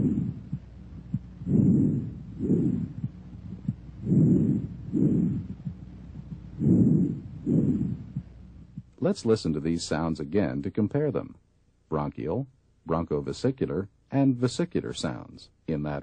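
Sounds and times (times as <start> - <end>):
breathing through a stethoscope: 1.4 - 5.8, 6.6 - 8.3.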